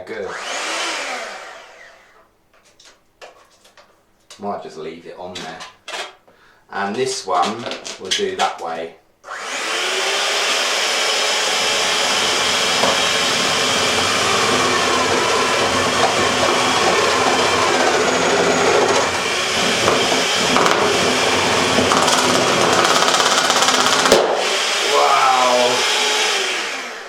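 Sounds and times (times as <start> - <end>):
electric food mixer running: 0.3 - 2.2, 9.3 - 27.0.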